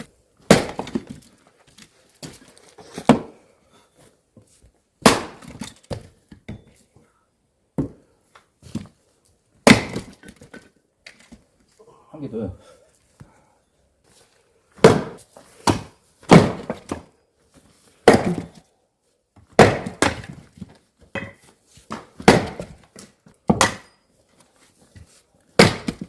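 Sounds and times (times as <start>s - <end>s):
axe chopping wood: 0.4s - 1.2s, 3.0s - 3.3s, 5.0s - 6.1s, 9.6s - 10.5s, 14.8s - 17.1s, 18.0s - 18.6s, 19.5s - 20.4s, 21.1s - 23.9s, 25.6s - 26.0s.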